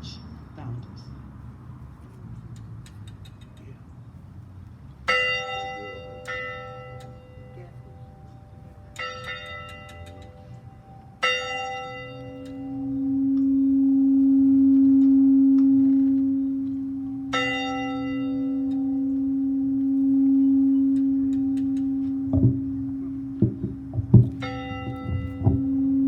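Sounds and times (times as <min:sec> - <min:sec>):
steady low tone: 0:03.4 - 0:26.0
bell struck and ringing: 0:05.1 - 0:13.3, 0:16.8 - 0:22.3, 0:24.2 - 0:26.0.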